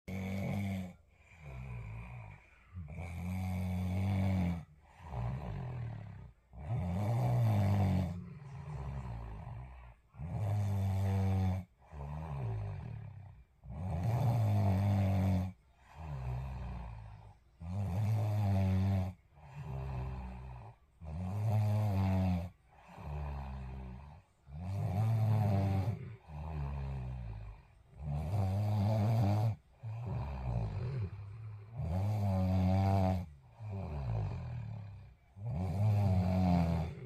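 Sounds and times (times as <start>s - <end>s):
heavy snoring: 0.1s - 37.0s.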